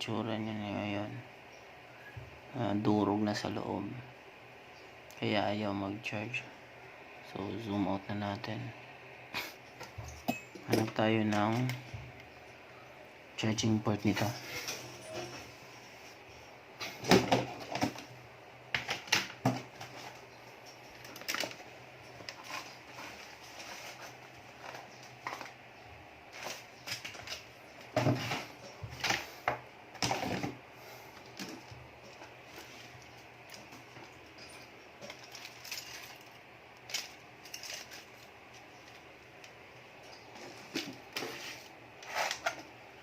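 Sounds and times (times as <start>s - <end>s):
small parts clattering: 31.2s - 39.1s.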